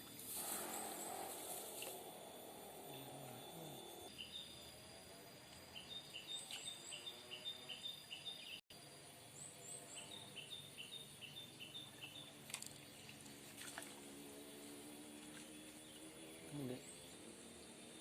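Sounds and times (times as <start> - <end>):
background hiss: 0.0 - 17.9
bird chirping: 0.6 - 4.7, 5.7 - 13.2.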